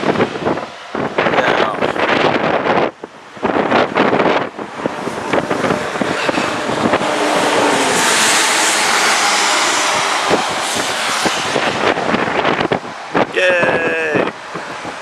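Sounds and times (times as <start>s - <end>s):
vehicle passing on wet road: 2.1s - 13.3s, 14.3s - 15.0s.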